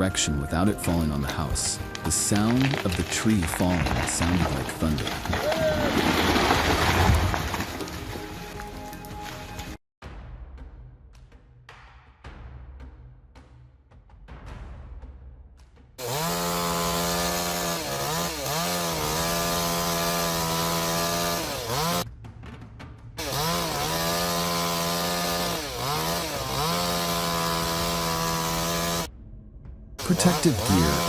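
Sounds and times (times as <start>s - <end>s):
chainsaw running at high revs: 16.0s - 22.0s, 23.2s - 29.1s, 30.0s - 31.0s.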